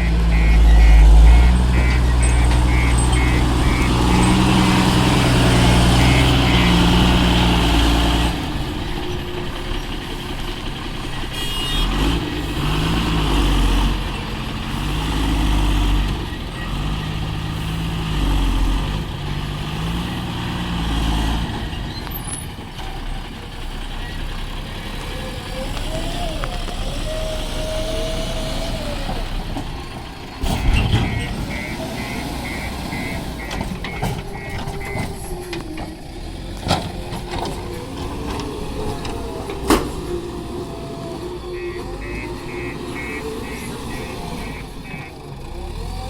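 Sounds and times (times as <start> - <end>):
high beeps: 0.0 - 5.2, 31.0 - 35.1, 41.5 - 45.2
heavy diesel engine revving: 0.0 - 46.0.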